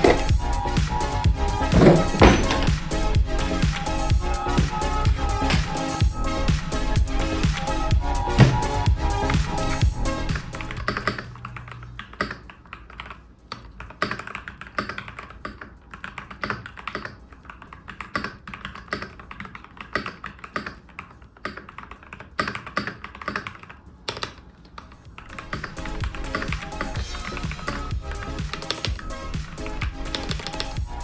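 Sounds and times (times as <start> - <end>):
background music: 0.0 - 11.6, 25.1 - 31.0
mechanical keyboard typing: 10.7 - 27.8, 28.4 - 29.0, 30.1 - 30.8.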